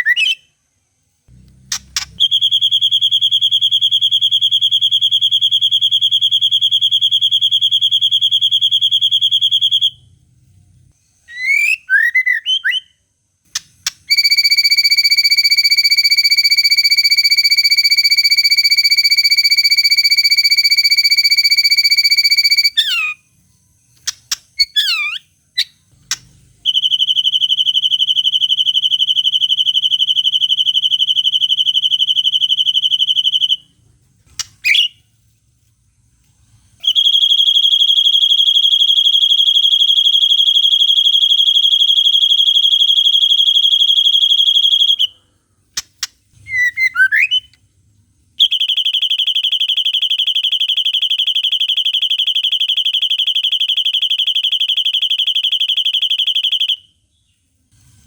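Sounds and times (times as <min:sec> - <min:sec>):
songbird high-pitched trills: 0:24.6 - 0:25.8, 0:46.5 - 0:47.5
swooping whistled bird notes: 0:24.6 - 0:33.6, 0:34.6 - 0:35.0, 0:46.4 - 0:47.5.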